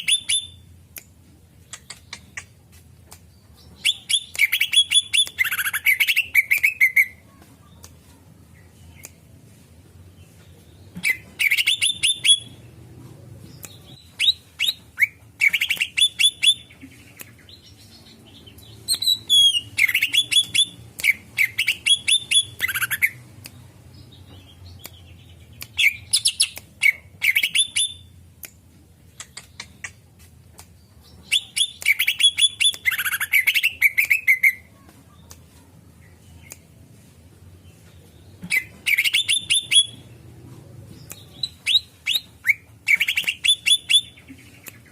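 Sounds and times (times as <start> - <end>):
bird chirping and whistling: 0.0 - 0.6, 3.8 - 7.1, 11.0 - 12.6, 13.7 - 16.8, 18.9 - 23.2, 25.7 - 28.1, 31.2 - 34.6, 38.5 - 40.1, 41.2 - 44.7.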